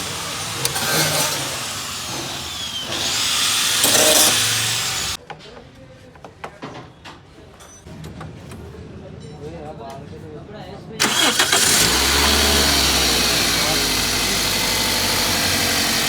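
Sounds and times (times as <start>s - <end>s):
power tool whining: 0.0s - 5.2s, 11.0s - 16.0s.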